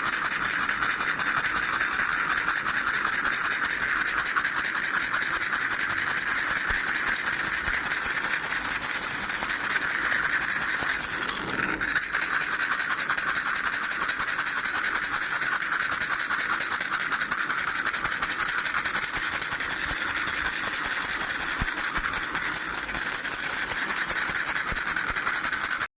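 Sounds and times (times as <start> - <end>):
baby rattle shaken rapidly: 0.0 - 25.9.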